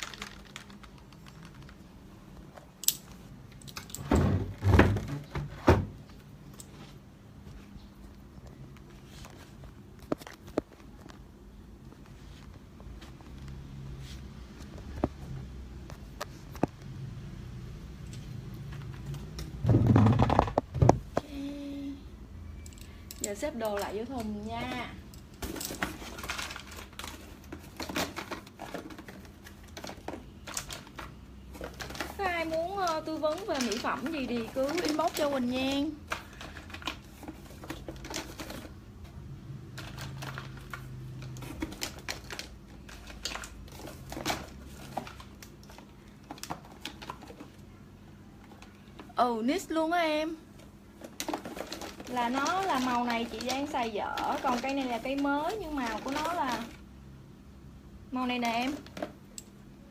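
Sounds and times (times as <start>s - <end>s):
packaging rustling: 0.0s - 2.5s, 25.4s - 38.8s, 39.6s - 47.6s, 50.9s - 56.8s
small items clicking and clacking: 0.0s - 4.1s, 22.6s - 38.8s, 39.7s - 47.6s, 51.0s - 56.8s
objects thudding on hard surface: 4.0s - 6.1s, 19.5s - 21.2s.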